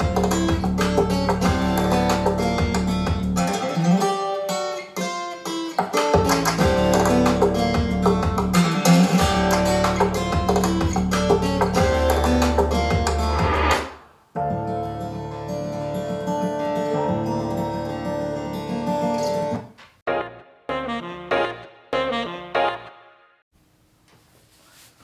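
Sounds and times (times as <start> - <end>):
steady bass: 0.0 - 3.4, 6.3 - 8.6, 9.2 - 13.8
acoustic guitar music: 0.0 - 13.8, 14.4 - 19.8.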